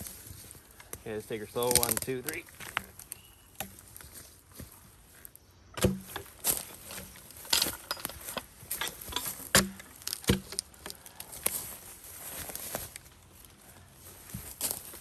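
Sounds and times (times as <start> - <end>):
scuffing and crackling: 0.0 - 15.0.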